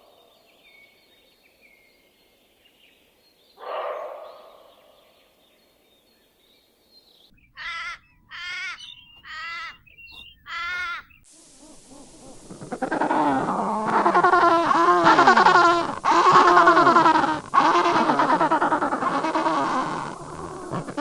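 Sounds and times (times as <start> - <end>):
chorus of animals calling: 7.5 - 21.0
harsh animal calls: 7.5 - 21.0.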